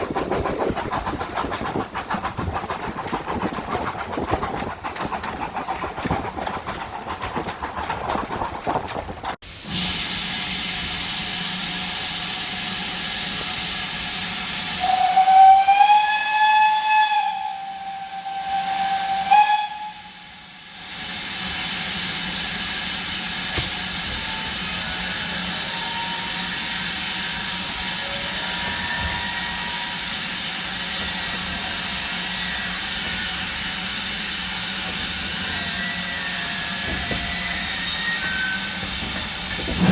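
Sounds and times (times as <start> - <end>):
steam hissing: 0.0 - 39.9
train running: 0.0 - 39.9
steam locomotive whistle: 14.7 - 20.4, 24.1 - 30.5, 35.4 - 39.0.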